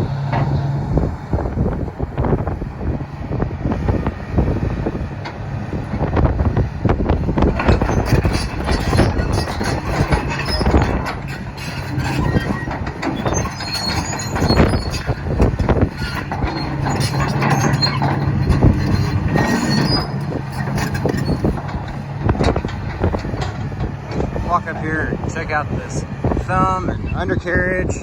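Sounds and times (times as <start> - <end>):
diesel engine running: 0.0 - 28.0
steel tracks clanking: 7.0 - 27.4
high track squeals: 7.6 - 27.6.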